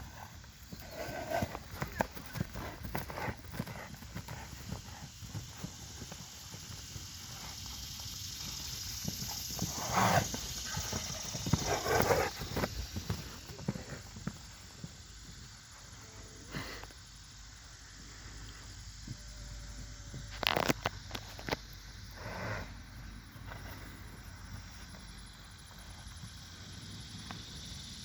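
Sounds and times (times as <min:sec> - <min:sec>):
horse hooves clip-clopping: 0:00.0 - 0:17.0, 0:22.8 - 0:27.6.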